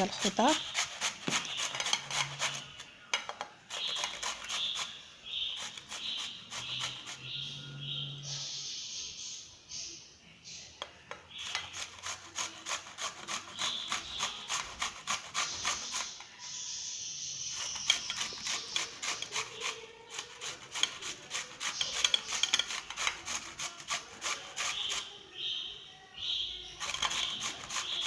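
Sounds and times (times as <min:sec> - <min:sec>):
vegetable being grated: 0:00.0 - 0:02.9, 0:03.7 - 0:07.6, 0:11.3 - 0:16.3, 0:17.5 - 0:25.2, 0:26.7 - 0:28.0.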